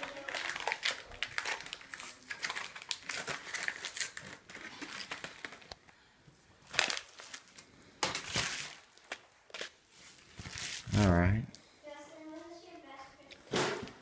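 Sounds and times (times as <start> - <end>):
protective film peeling and crackling: 0.0 - 5.9, 6.6 - 11.2.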